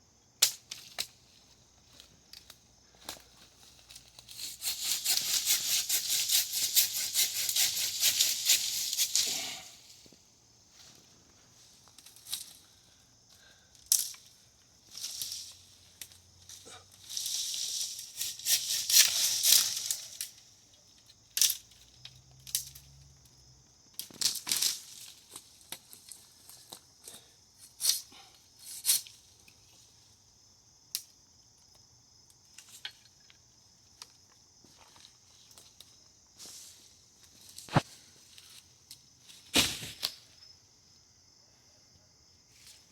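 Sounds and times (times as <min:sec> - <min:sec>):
dry branches and leaves crackling: 0:17.0 - 0:20.4.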